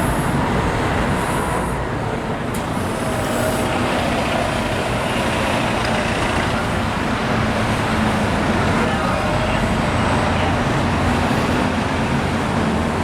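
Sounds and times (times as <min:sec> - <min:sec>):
road traffic rumble: 0:00.0 - 0:13.0
vehicles passing hum: 0:00.0 - 0:13.0.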